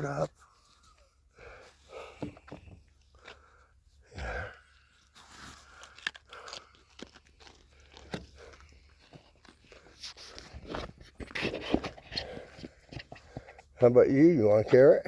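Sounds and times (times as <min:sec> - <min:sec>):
deer chewing carrots: 0:04.7 - 0:13.8.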